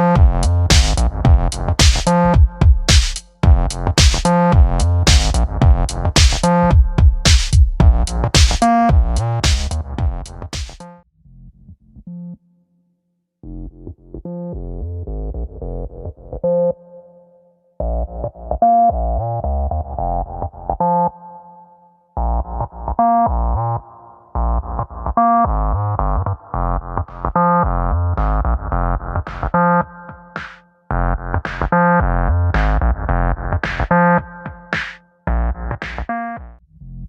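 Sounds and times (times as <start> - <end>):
steady low beat: 0.0 - 10.8
synthesizer and keyboard chords: 0.0 - 11.0, 14.1 - 36.6.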